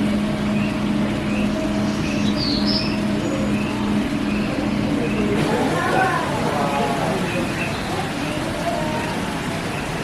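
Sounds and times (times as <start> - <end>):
rushing background noise: 0.0 - 10.0
steady machine hum: 0.0 - 10.0
bright high chirp: 1.3 - 5.2.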